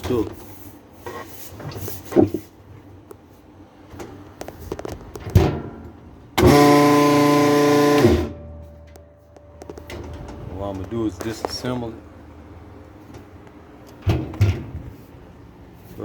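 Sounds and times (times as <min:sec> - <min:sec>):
washing machine motor humming: 0:06.4 - 0:08.4.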